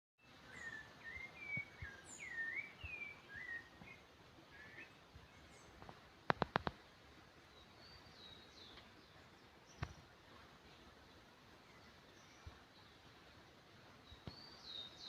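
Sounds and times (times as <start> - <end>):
birds singing whistled phrases: 0.2 - 5.7, 14.0 - 15.0.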